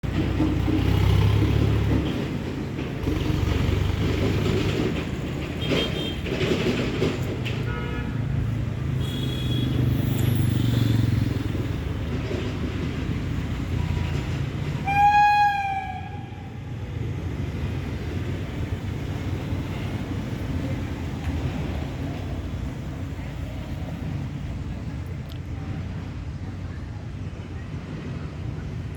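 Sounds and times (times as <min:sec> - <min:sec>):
train rumbling: 0:00.0 - 0:28.9
train horn: 0:07.6 - 0:08.3, 0:09.0 - 0:09.8, 0:14.8 - 0:16.7.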